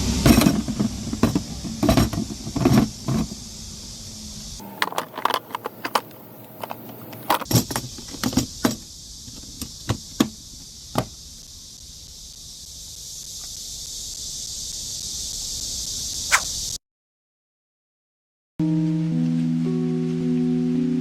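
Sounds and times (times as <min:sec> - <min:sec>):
steady high hiss: 0:00.0 - 0:16.8.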